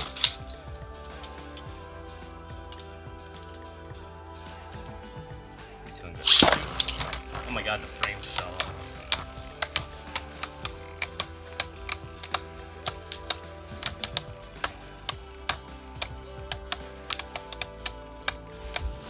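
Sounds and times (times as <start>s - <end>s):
background music: 0.0s - 19.0s
spinning tops clacking: 6.2s - 19.0s.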